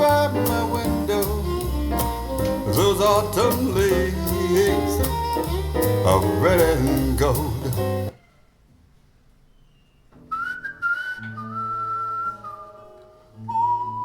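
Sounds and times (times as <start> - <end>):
song over loudspeakers: 0.0 - 8.1.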